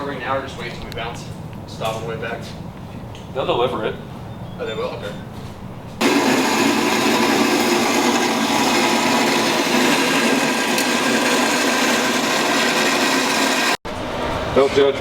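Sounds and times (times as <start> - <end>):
power tool running: 6.0 - 14.1.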